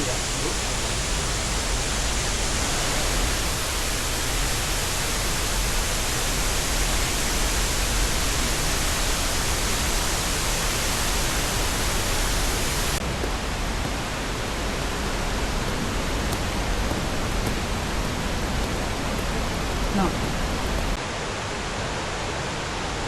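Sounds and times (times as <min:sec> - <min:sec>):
low rumble: 0:00.0 - 0:07.2
waterfall rushing: 0:00.0 - 0:23.0.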